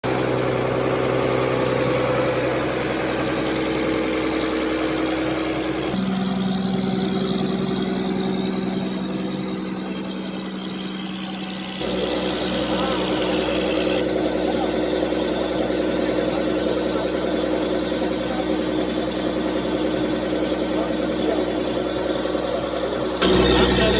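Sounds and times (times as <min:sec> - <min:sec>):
diesel generator running: 0:00.0 - 0:23.9.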